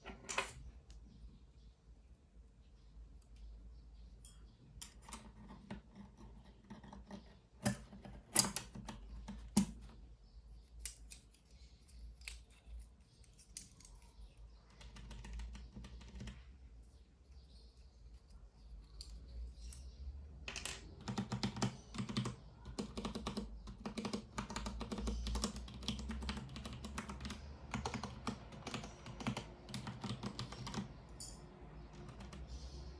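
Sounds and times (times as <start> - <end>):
keyboard clicks: 20.8 - 31.0, 32.0 - 32.5.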